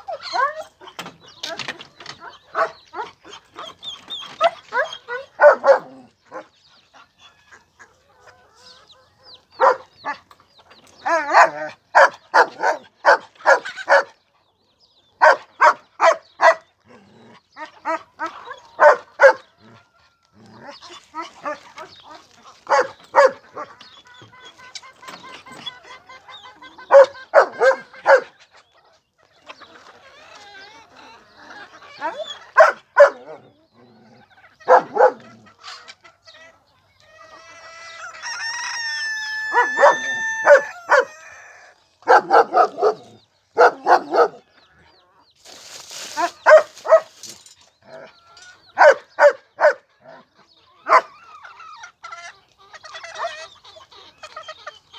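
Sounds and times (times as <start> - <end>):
chickens clucking: 0.0 - 54.9
rooster crowing: 37.9 - 43.0.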